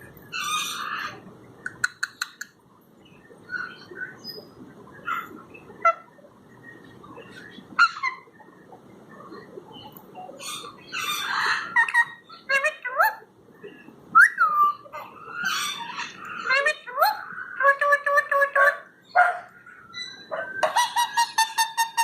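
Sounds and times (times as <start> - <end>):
parrot squawk: 0.3 - 1.2, 10.4 - 13.2, 14.2 - 18.8, 20.0 - 22.0
parrot chirps: 20.0 - 22.0.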